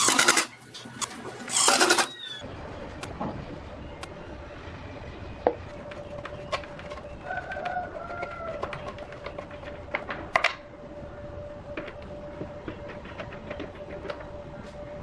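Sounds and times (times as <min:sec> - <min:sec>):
steady hum: 0:00.0 - 0:08.0, 0:08.8 - 0:15.0
rooster crowing: 0:07.2 - 0:08.9.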